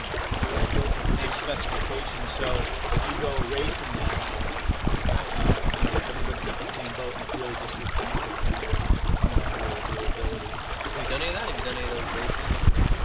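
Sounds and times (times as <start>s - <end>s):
water rushing along boat hull: 0.0s - 13.0s
wind buffeting microphone: 0.0s - 13.0s.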